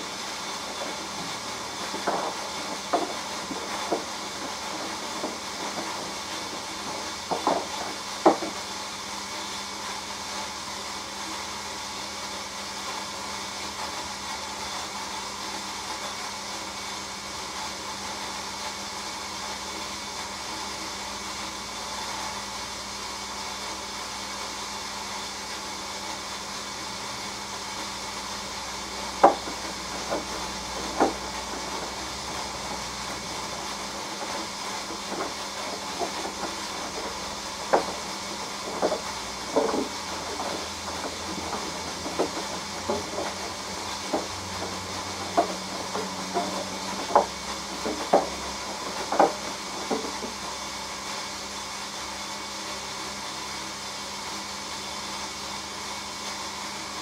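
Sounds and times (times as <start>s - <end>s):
water running into washing machine: 0.0s - 8.8s, 28.5s - 51.5s
sharp knocks: 0.7s - 8.6s, 29.2s - 50.4s.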